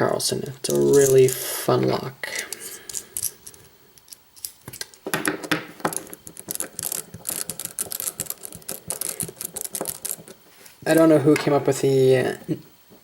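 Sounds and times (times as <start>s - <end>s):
metallic clicks and ratcheting rattles: 5.9s - 10.4s.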